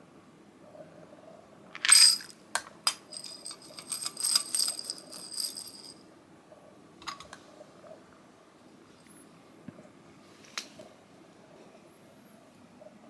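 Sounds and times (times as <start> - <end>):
dry cat food rattling in bowl: 1.8 - 2.3, 2.9 - 6.0.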